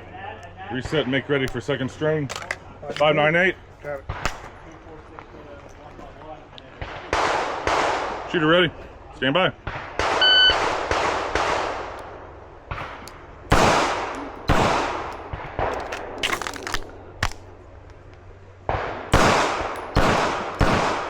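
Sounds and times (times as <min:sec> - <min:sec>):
pistol shots with ringing echo: 0:06.8 - 0:08.5, 0:09.6 - 0:17.6, 0:18.7 - 0:21.0
shot timer beep: 0:10.2 - 0:10.6.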